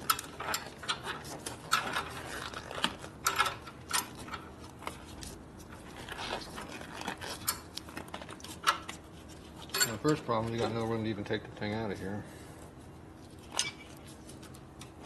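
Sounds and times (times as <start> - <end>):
metal tools clicking and clinking: 9.7 - 10.8, 13.5 - 14.0.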